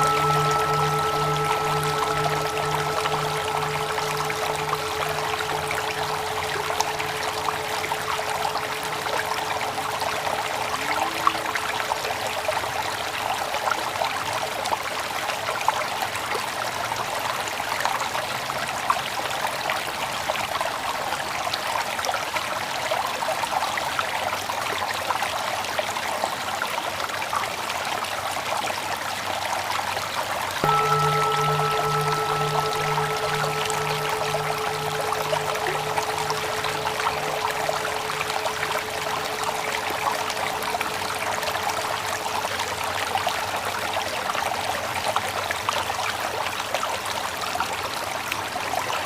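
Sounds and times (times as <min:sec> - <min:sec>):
held musical tones: 0:00.0 - 0:11.0, 0:30.6 - 0:43.4
running water flowing: 0:00.0 - 0:11.8, 0:30.6 - 0:43.9.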